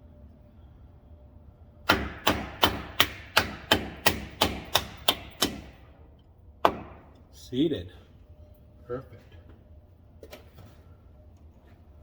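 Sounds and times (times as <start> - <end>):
hammer striking metal: 1.9 - 5.8.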